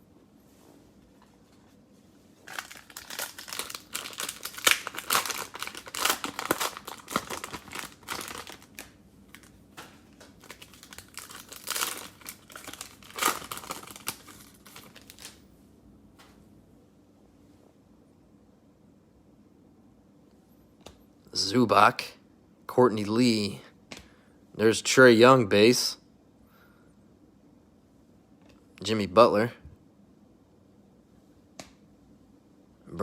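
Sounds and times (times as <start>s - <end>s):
plastic wrapper crinkling: 2.4s - 15.4s.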